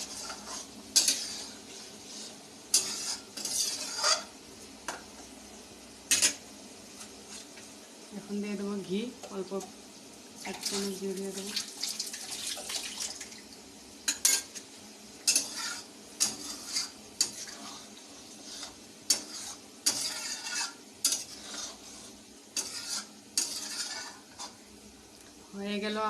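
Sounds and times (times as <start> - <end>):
spoon scraping a pan: 0.0 - 5.0, 6.1 - 6.4, 14.1 - 24.6
faint sizzle: 0.0 - 26.0.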